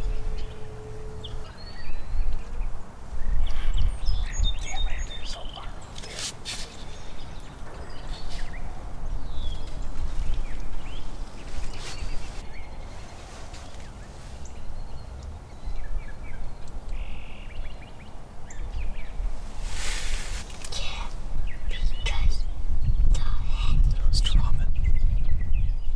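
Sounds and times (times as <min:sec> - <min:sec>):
low outdoor rumble: 0:00.0 - 0:24.2
small birds chirping: 0:00.0 - 0:25.9.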